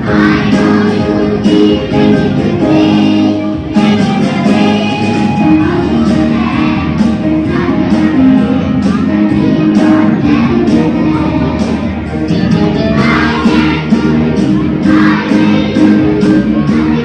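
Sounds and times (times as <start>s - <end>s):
music with plucked strings: 0.0s - 17.0s.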